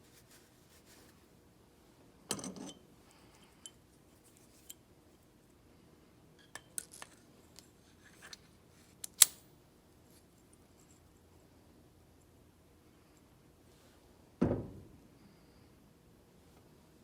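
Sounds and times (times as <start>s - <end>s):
small metal parts clinking: 6.4s - 8.4s.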